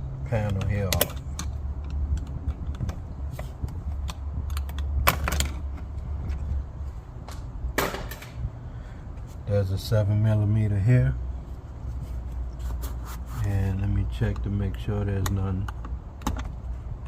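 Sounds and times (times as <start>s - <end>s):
steady low rumble: 0.0s - 17.0s
hand tools and plastic trim clicking: 0.4s - 6.4s.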